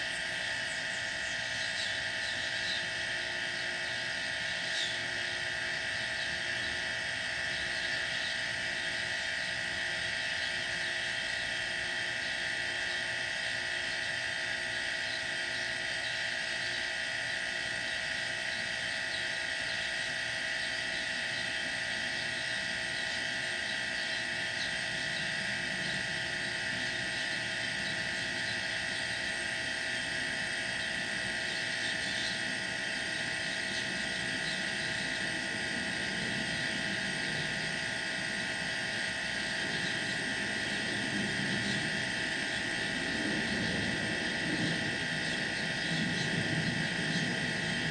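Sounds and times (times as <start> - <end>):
air compressor humming and whining: 0.0 - 47.9.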